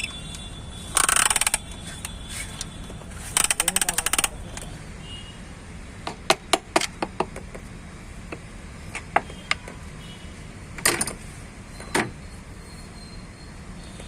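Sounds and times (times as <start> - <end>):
metal tools clicking and knocking: 0.9 - 1.7, 3.3 - 4.7.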